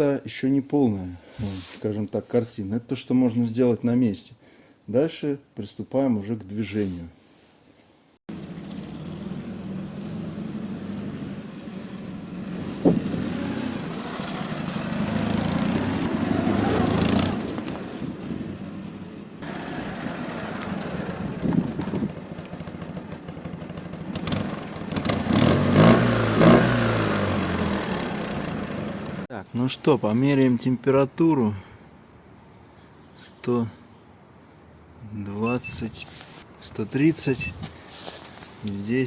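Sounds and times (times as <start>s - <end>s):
motorcycle engine revving: 8.3s - 29.3s.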